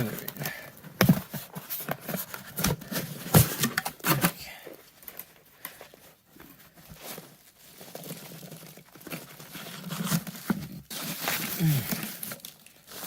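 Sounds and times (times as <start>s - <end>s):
packaging crinkling and tearing: 6.7s - 13.0s.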